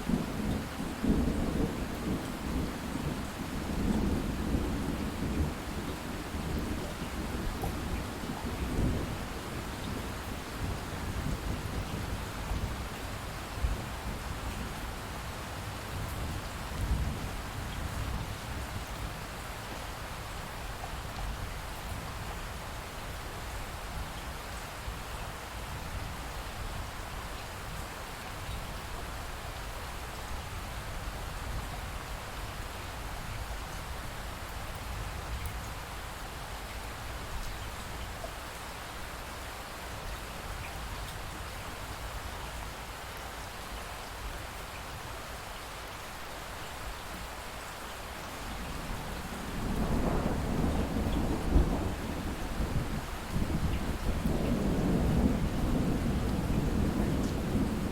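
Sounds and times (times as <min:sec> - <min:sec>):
steady rain falling: 0:00.0 - 0:57.9.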